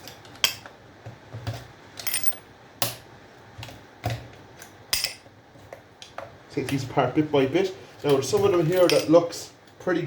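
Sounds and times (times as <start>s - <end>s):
small metal parts clinking: 2.0s - 2.4s.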